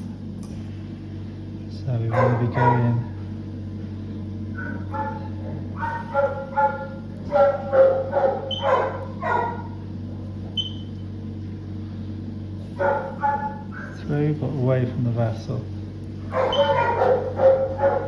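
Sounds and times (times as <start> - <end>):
steady low hum: 0.0 - 18.0
dog barking: 2.1 - 3.2, 4.5 - 9.8, 12.7 - 14.0, 16.2 - 18.0.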